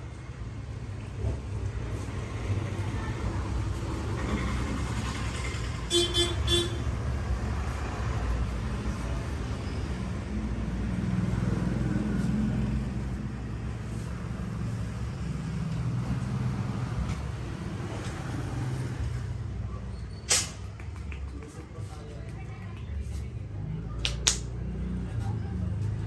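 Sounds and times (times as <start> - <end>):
road traffic rumble: 0.0 - 26.0
vehicle horn toots: 5.9 - 6.9.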